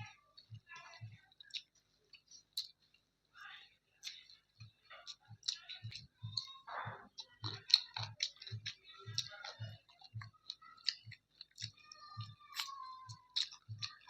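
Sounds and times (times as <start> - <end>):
person chewing food: 0.0 - 14.0.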